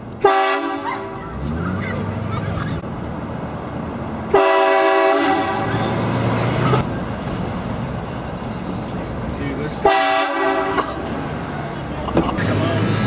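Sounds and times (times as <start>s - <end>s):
train horn blast: 0.2s - 0.9s, 4.3s - 5.8s, 9.8s - 10.8s.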